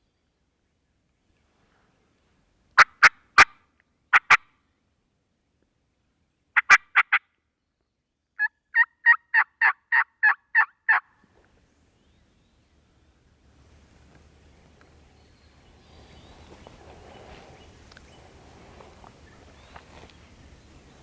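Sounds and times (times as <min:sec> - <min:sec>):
turkey clucks and yelps: 0:06.6 - 0:07.2, 0:08.4 - 0:11.1.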